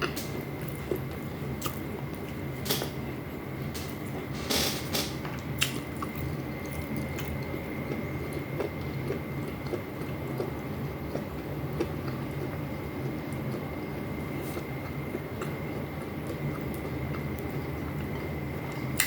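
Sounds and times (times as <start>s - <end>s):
person chewing and mouth smacking: 0.0s - 2.4s, 5.6s - 12.6s.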